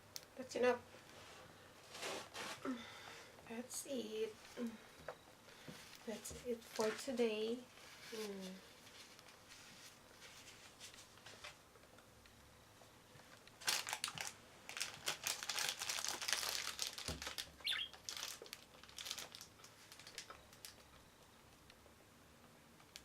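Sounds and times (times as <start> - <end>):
food bag crinkling: 13.3 - 21.0.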